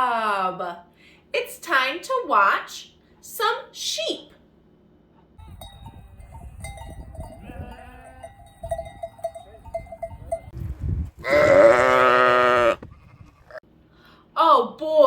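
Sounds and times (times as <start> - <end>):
sheep bleating: 7.4 - 8.3, 11.2 - 13.6.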